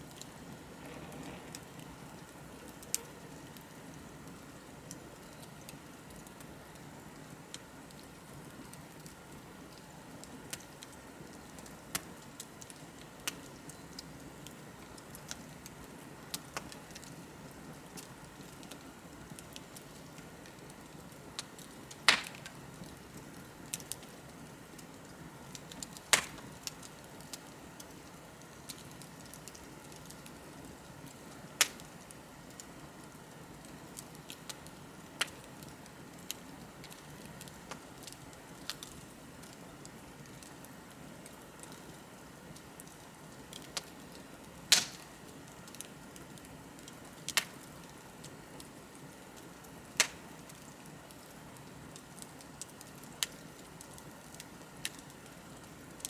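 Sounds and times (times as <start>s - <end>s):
bonfire crackling: 0.0s - 56.0s
flames rushing: 0.2s - 3.0s.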